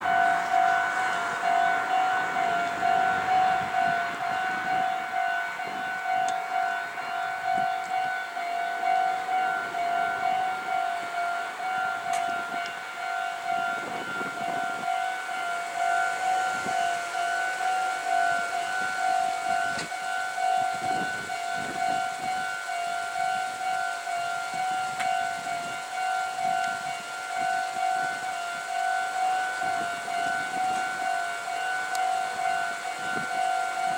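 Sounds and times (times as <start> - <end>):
level crossing warning bell ringing: 0.0 - 33.9.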